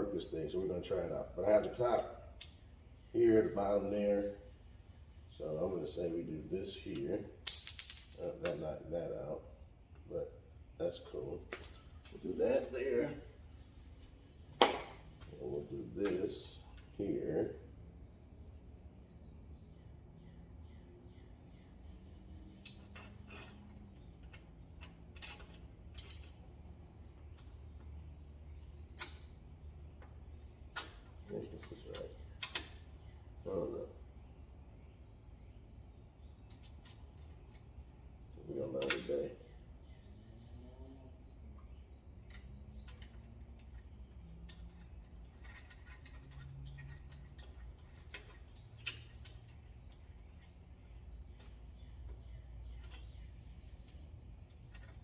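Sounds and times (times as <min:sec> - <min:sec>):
light metallic clicks and clinks: 0:06.9 - 0:08.7, 0:22.5 - 0:26.7, 0:28.9 - 0:30.1, 0:30.7 - 0:32.8, 0:42.3 - 0:55.0.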